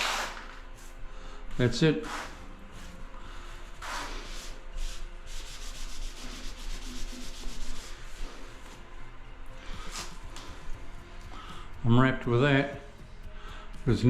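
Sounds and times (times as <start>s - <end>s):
rubbing and scraping: 3.8s - 8.8s.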